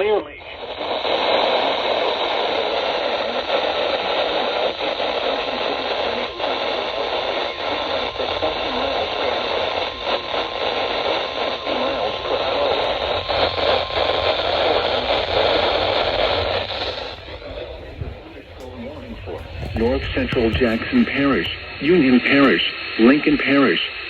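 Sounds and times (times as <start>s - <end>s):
radio static hiss: 0.0s - 24.0s
faint voice under static: 17.2s - 21.8s.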